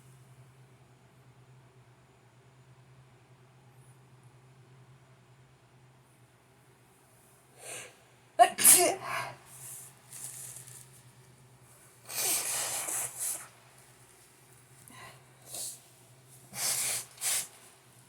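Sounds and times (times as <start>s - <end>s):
person breathing: 7.6s - 8.0s, 12.1s - 13.6s, 14.9s - 15.9s, 16.5s - 17.6s
person sneezing: 7.6s - 9.8s, 12.1s - 13.5s, 16.5s - 17.5s
noisy breath through nose: 9.0s - 10.9s, 12.0s - 13.8s, 14.9s - 17.8s.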